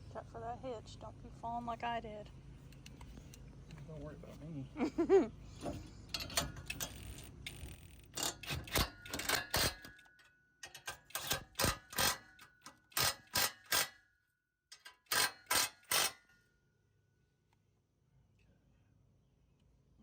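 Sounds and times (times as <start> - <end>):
hand tools clicking on bolts: 5.6 - 14.0, 14.7 - 16.3.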